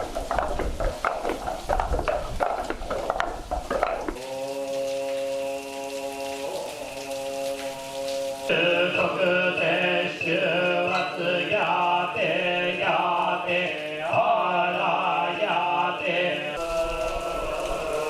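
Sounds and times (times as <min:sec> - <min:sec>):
monks chanting together: 0:04.2 - 0:18.0.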